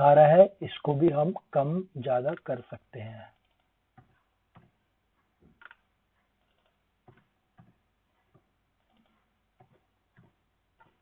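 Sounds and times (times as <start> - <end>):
mouse and keyboard clicks: 6.4 - 7.7.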